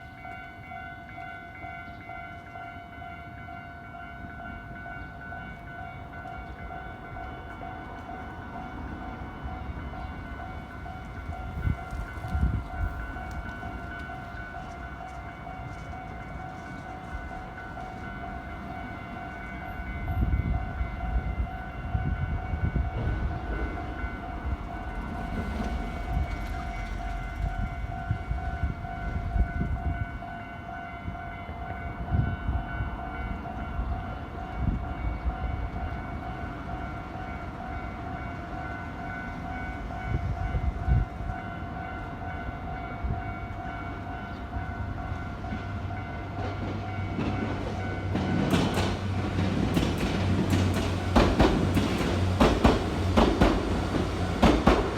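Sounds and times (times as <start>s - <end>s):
level crossing warning bell ringing: 0.0s - 54.9s
train wheels thumping on rails: 46.4s - 54.9s.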